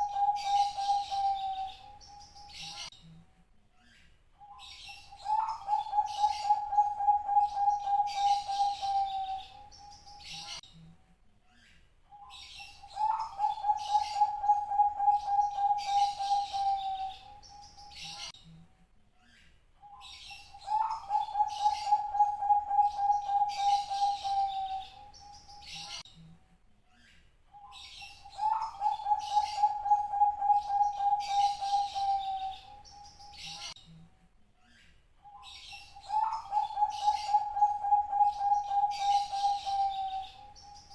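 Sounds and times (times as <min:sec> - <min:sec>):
dove cooing: 0:00.0 - 0:02.2, 0:05.1 - 0:09.7, 0:12.8 - 0:17.5, 0:20.5 - 0:25.4, 0:28.2 - 0:33.0, 0:36.0 - 0:40.9.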